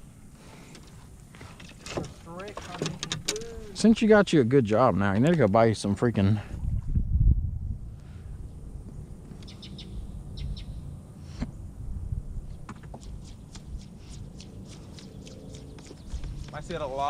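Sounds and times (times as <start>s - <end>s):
low steady rumble: 0.0s - 12.7s
birds chirping: 8.4s - 11.0s, 12.5s - 17.0s.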